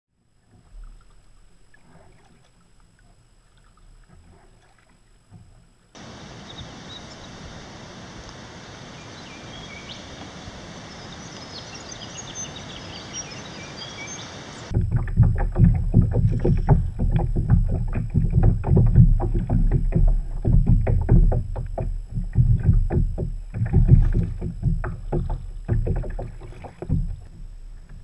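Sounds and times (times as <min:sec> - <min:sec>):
wind and water hiss: 0:00.2 - 0:28.0.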